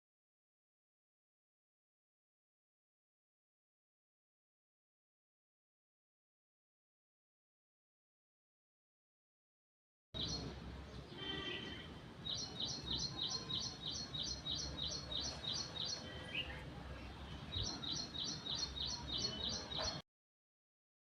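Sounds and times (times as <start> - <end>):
steady outdoor hiss: 10.2 - 20.0.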